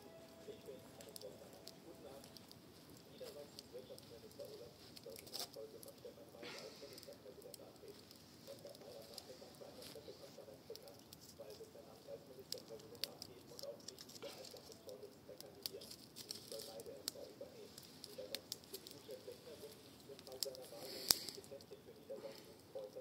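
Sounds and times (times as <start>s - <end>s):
campfire crackling and popping: 0.0s - 23.0s
hiss of flames: 16.6s - 23.0s.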